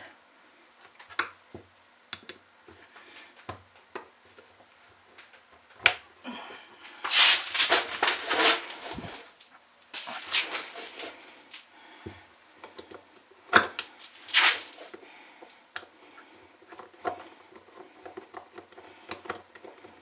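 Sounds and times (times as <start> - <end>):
loud uneven hissing: 6.2 - 16.6
small metal parts clicking: 7.0 - 11.7.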